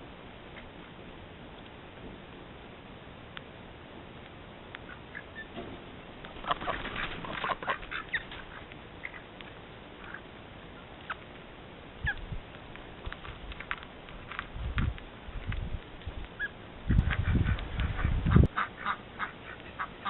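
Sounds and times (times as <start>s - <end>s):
birds calling and chirping: 6.2s - 11.4s.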